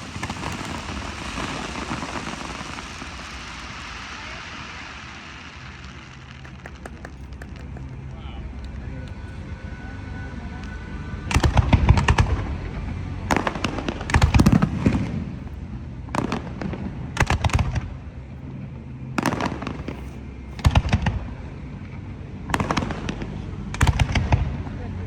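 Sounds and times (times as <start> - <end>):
fireworks cracking and banging: 0.0 - 9.6, 13.3 - 15.3, 16.1 - 17.8, 19.2 - 21.2, 22.5 - 24.5.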